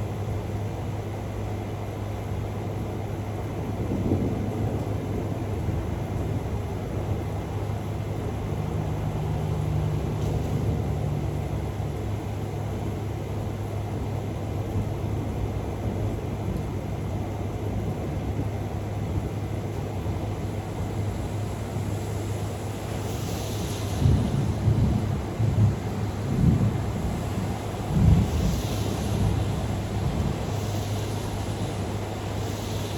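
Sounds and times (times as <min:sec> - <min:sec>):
steady low rumble: 0:03.2 - 0:32.9.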